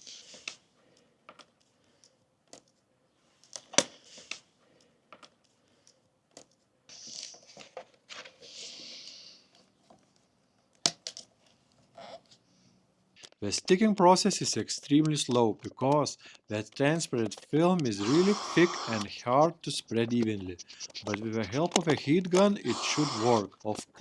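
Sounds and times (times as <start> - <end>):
sharp clicks: 15.0 - 24.0.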